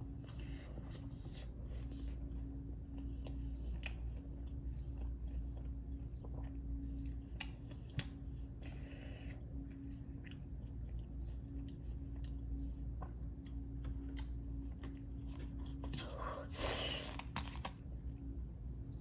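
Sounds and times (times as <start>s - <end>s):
steady low hum: 0.0s - 19.0s
person chewing: 0.2s - 16.2s, 17.0s - 18.2s.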